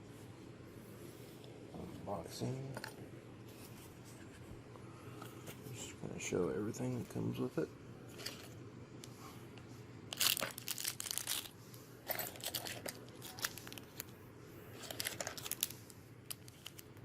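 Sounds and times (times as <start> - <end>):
packaging crinkling and rustling: 10.1 - 17.0.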